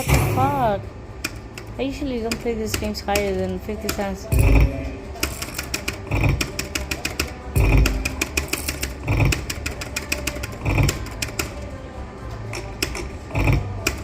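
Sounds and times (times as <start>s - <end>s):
slot machine low thud: 0.0s - 0.8s, 4.0s - 9.7s
rapid clicking reel ticks: 1.2s - 4.6s, 5.2s - 11.6s, 12.5s - 14.0s.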